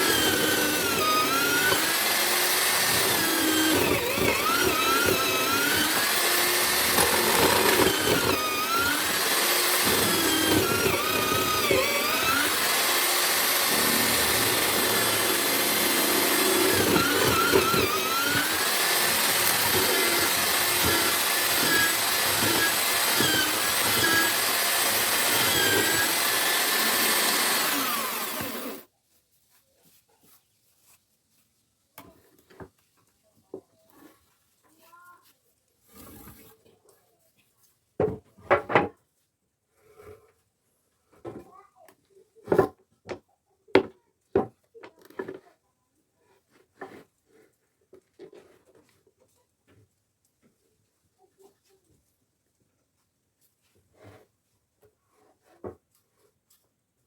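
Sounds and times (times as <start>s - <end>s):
chisel cutting wood: 0.0s - 28.9s
electric drill motor whining: 0.0s - 28.9s.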